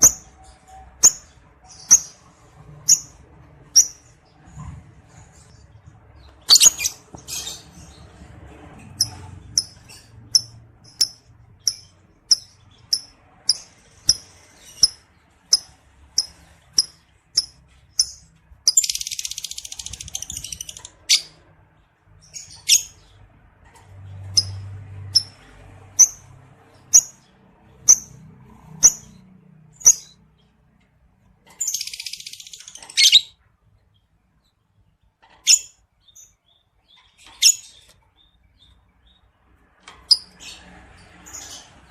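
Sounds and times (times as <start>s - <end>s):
lovebird chattering: 0.0s - 0.3s, 2.8s - 4.1s, 6.5s - 7.6s, 9.0s - 21.4s
lovebird chirping: 0.0s - 4.2s, 6.2s - 8.0s, 9.0s - 21.4s, 22.2s - 23.1s, 29.8s - 30.2s, 31.5s - 33.4s.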